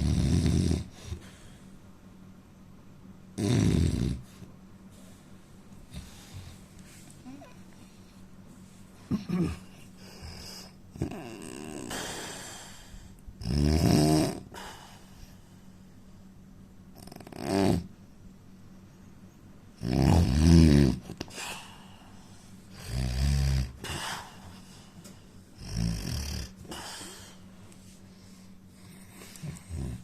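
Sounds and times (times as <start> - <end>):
man snoring: 0.0 - 1.0, 3.4 - 4.3, 10.2 - 12.8, 13.4 - 14.8, 17.0 - 17.9, 19.8 - 21.2, 22.7 - 24.5, 25.6 - 27.3, 28.8 - 30.0
breathy hiss: 11.7 - 13.2, 14.3 - 16.4, 21.2 - 30.0.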